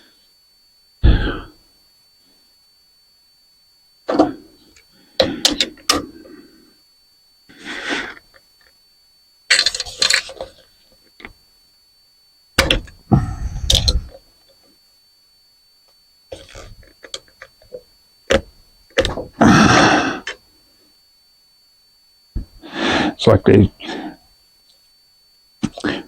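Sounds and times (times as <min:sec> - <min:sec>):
metal fan parts clinking: 0:09.5 - 0:10.6.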